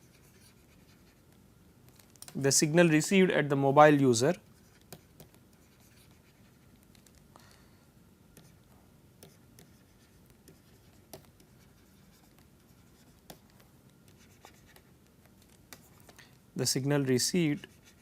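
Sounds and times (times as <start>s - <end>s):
pen tapping and writing: 4.6s - 7.3s, 8.3s - 16.3s.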